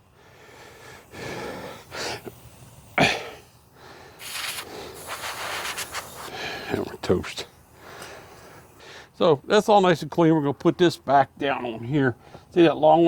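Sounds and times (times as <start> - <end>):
hissing breath-like noises: 0.0 - 9.2
strong short puff: 4.2 - 6.8.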